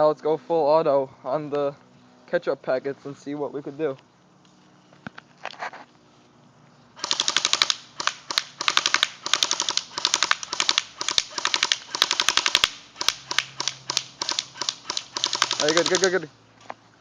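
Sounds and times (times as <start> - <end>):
airsoft rifle firing bursts: 7.0 - 16.3.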